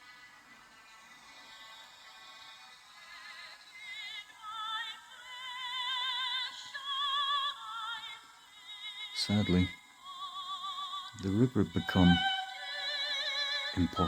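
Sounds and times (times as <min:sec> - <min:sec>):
operatic voice singing: 0:09.2 - 0:09.7, 0:11.1 - 0:13.0, 0:13.6 - 0:14.0.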